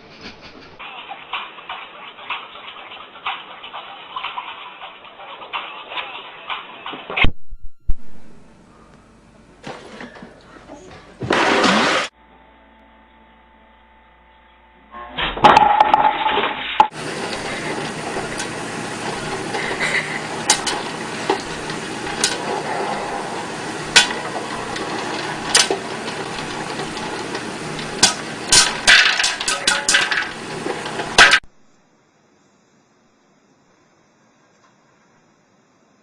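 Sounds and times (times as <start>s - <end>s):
dishes clinking and clattering: 15.4s - 31.4s.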